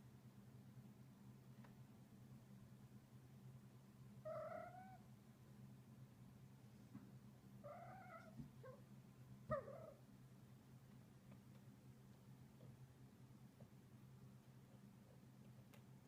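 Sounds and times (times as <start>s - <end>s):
cat trilling: 4.2s - 5.0s, 7.6s - 8.8s, 9.5s - 10.0s.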